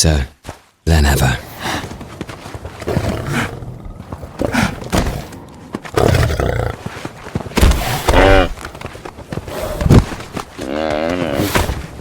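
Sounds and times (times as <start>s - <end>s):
lion roaring: 2.8s - 6.8s.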